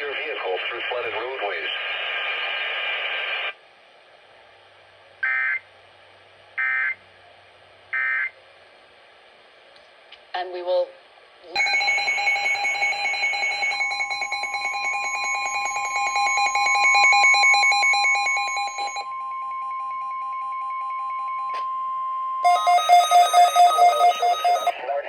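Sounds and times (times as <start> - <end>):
steady warning alert tone: 11.6 - 20.4, 22.4 - 24.7
pulsing beep: 11.6 - 21.6, 22.4 - 24.8
rapidly pulsing electronic alarm beep: 11.6 - 21.6, 22.4 - 24.8.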